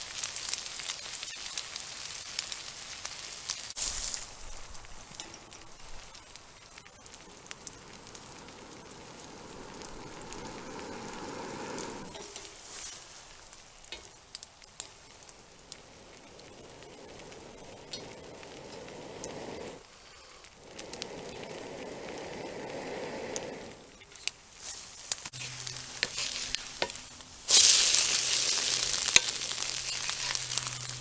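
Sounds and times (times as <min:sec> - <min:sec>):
toast sizzling in a pan: 0:00.0 - 0:31.0
low rushing sound: 0:14.9 - 0:24.0.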